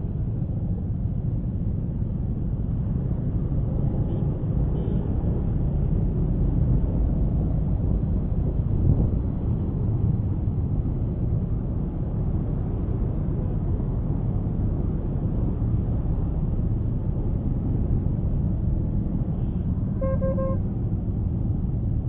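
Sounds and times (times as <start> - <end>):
road noise: 0.0 - 22.0
wind on microphone: 5.5 - 22.0.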